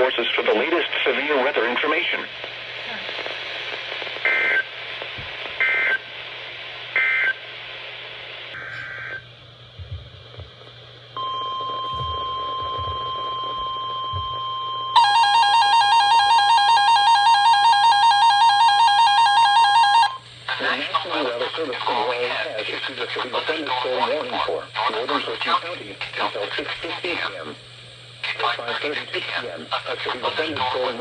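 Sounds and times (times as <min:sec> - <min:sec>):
steady radio alarm tone: 0:08.6 - 0:09.2, 0:11.2 - 0:20.7
loud pulsing electronic alert tone: 0:15.0 - 0:20.2
screeching data tone bursts: 0:15.0 - 0:20.2.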